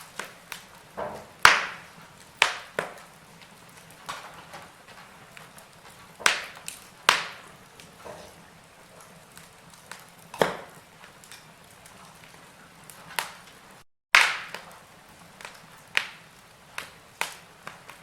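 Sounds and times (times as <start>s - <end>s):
loud sharp pops: 0.0s - 3.1s, 3.8s - 8.4s, 9.4s - 11.2s, 12.9s - 13.5s, 14.1s - 14.8s, 15.4s - 18.0s
firewood crackling: 0.0s - 18.0s.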